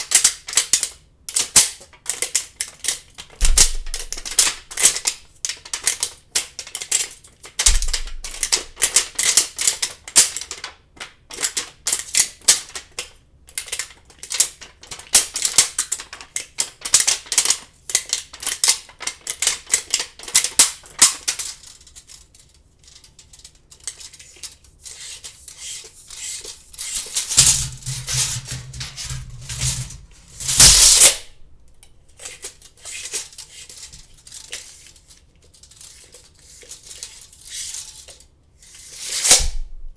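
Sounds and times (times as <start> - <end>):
tape measure clicking and rattling: 7.6 - 9.8, 22.8 - 31.3
tape measure snapping: 26.8 - 31.3.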